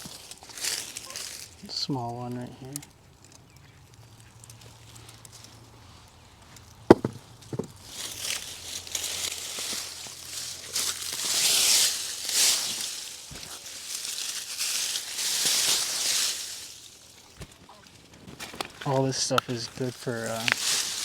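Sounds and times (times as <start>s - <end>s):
rustling and scraping of vines and dirt: 0.0s - 21.0s
tool knocking into soil: 6.9s - 7.8s.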